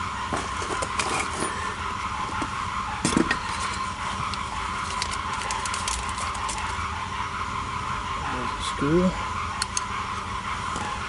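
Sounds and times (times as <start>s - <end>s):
steady hum: 0.0s - 11.0s
hand tools clicking and tapping: 3.0s - 6.7s.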